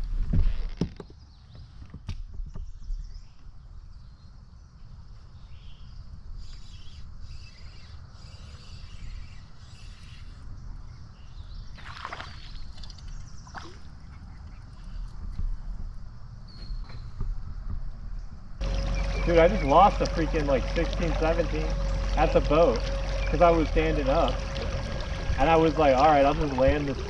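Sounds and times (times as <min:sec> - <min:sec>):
water sloshing: 0:11.8 - 0:14.4, 0:18.6 - 0:27.0
low rumble: 0:14.9 - 0:27.0
water splashing rush: 0:18.6 - 0:27.0.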